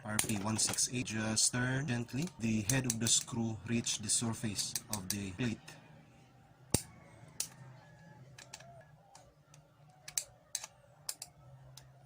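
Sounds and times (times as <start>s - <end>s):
light ticks of tool and metal: 4.6s - 5.3s, 8.3s - 12.0s.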